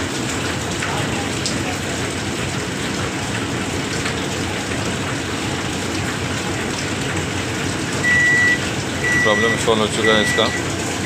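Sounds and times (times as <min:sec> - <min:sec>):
microwave oven fan humming: 0:02.3 - 0:11.0.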